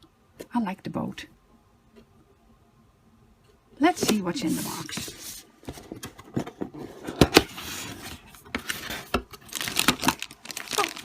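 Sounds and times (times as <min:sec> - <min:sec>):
cardboard box scraping and rustling: 0:04.0 - 0:09.2.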